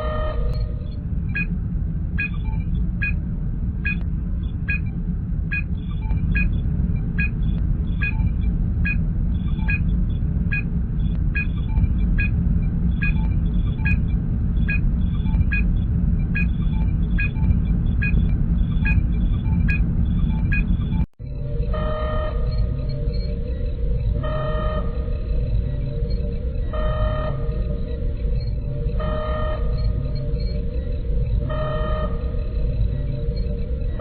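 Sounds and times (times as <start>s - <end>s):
low engine hum: 0.0s - 34.0s
electronic scan blips: 21.7s - 34.0s.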